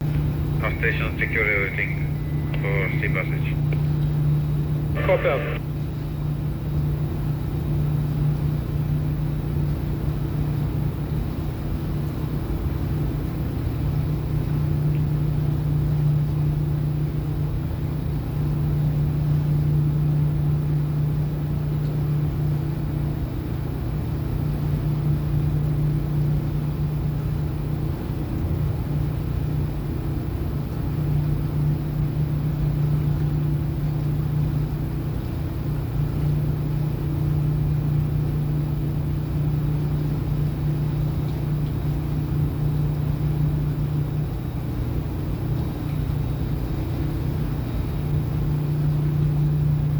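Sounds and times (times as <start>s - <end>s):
ship engines droning: 0.0s - 8.2s.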